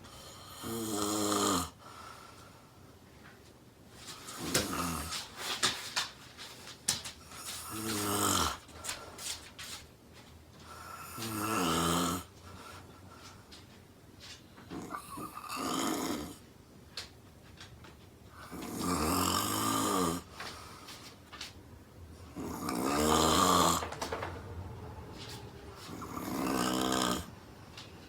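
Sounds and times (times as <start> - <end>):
woman snoring: 0.2 - 1.8, 7.6 - 8.7, 10.8 - 12.3, 14.7 - 16.4, 18.4 - 20.3, 22.2 - 24.1, 25.7 - 27.5.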